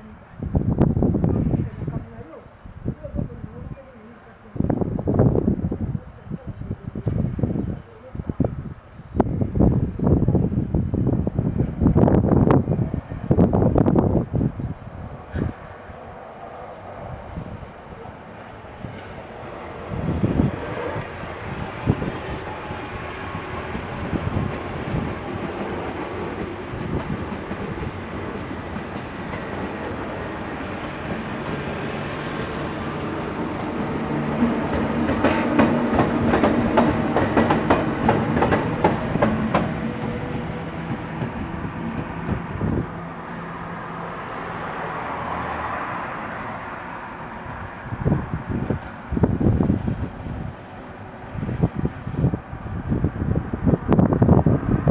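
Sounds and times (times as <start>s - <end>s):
train passing on tracks: 0.0s - 54.9s
wheels clacking over rail joints: 23.6s - 42.5s.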